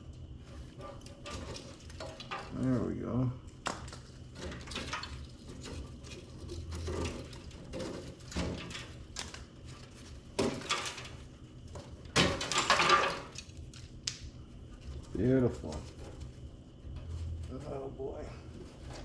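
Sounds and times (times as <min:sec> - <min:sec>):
metal tools clattering: 0:12.2 - 0:13.4.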